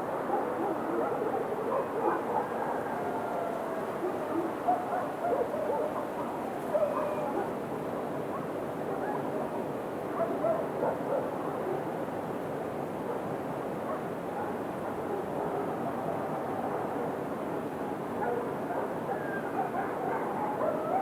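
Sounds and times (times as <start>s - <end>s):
dogs barking: 0.3s - 2.8s, 4.0s - 7.5s, 10.2s - 11.3s, 18.2s - 21.0s.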